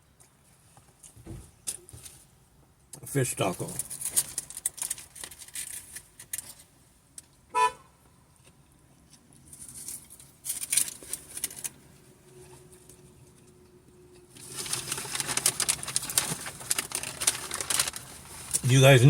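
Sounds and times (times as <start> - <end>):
quiet rustles and clicks: 0.2 - 7.4, 8.4 - 18.8
car horn toot: 7.5 - 7.9.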